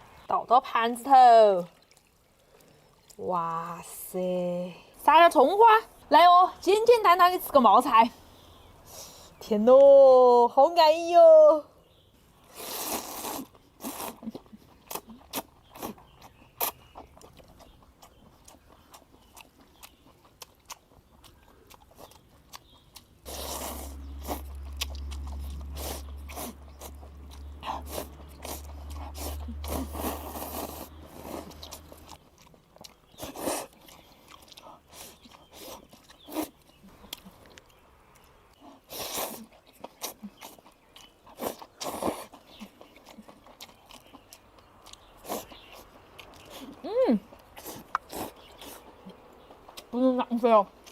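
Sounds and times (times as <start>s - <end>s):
crunching and chewing food: 12.1s - 50.9s.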